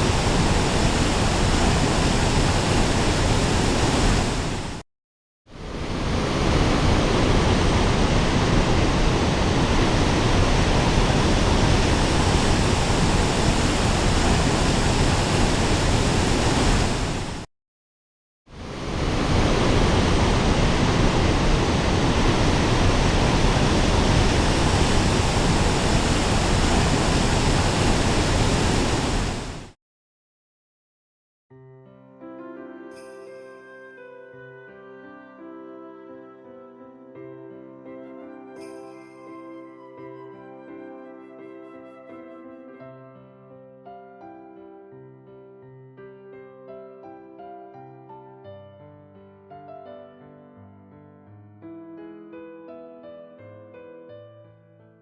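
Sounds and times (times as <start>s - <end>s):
mountain stream rushing: 0.0s - 4.8s, 5.6s - 17.5s, 18.6s - 29.7s.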